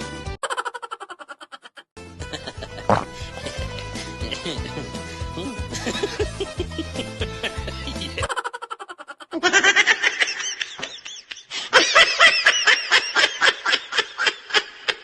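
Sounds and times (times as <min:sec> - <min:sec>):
high-pitched laughter: 0:00.4 - 0:01.9, 0:05.4 - 0:15.0.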